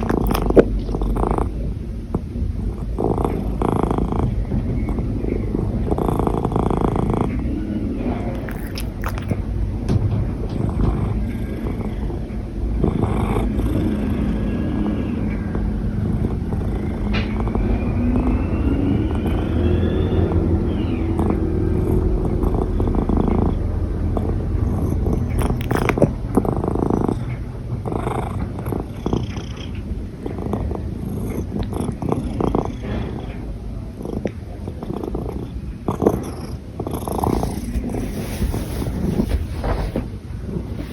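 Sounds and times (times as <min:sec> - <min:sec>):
cat purring: 0:00.0 - 0:40.9
cat hiccup jolts: 0:08.3 - 0:09.4, 0:24.8 - 0:27.0.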